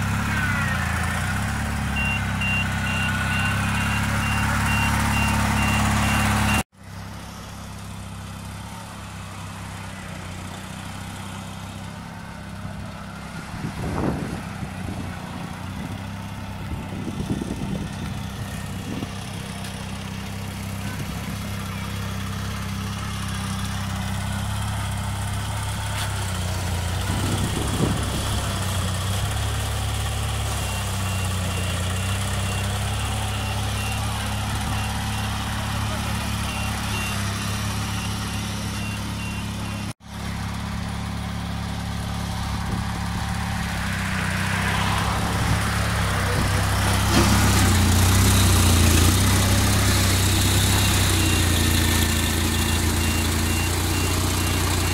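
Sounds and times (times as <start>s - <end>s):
engine running at low speed: 0.0s - 54.9s
reversing beeps: 1.9s - 6.6s, 30.4s - 39.9s, 50.4s - 54.9s.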